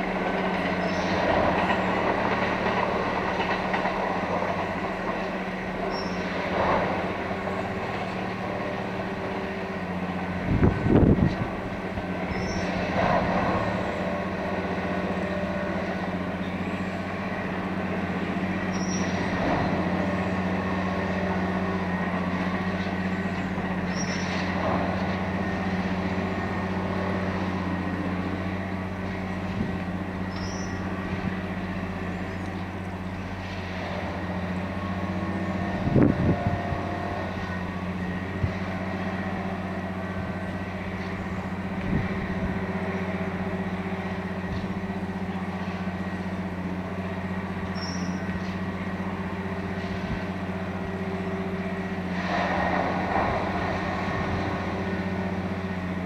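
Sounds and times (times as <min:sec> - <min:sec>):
diesel engine droning: 0:00.0 - 0:56.0.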